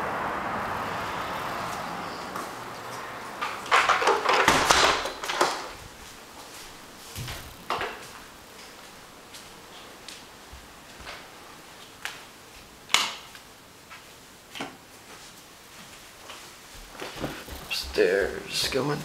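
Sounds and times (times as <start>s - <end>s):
outdoor city hum: 0.0s - 19.0s
sliding door rumbling shut: 3.4s - 5.8s.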